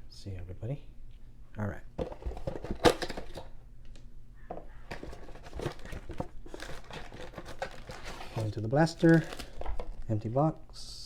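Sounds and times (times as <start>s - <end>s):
plastic wrapping crinkling and tearing: 4.9s - 10.2s.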